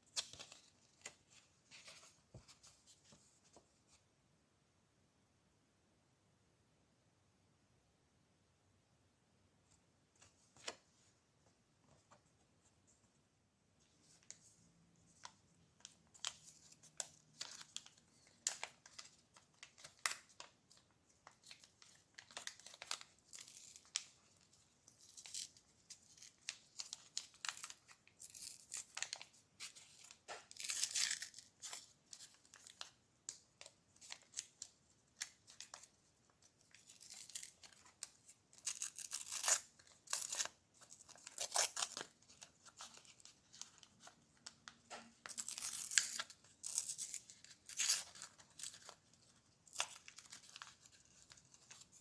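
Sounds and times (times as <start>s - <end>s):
packaging crinkling and tearing: 25.0s - 32.9s, 36.6s - 44.5s, 45.2s - 52.0s.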